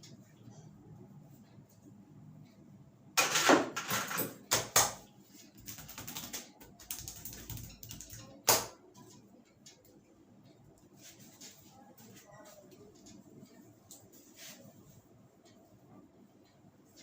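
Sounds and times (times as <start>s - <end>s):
soft rustling: 10.8s - 15.0s.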